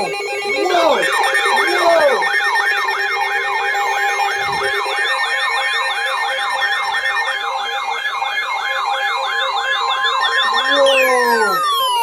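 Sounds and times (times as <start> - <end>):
alert siren yelp over steady tone: 0.0 - 2.5, 3.6 - 5.0, 9.3 - 12.0.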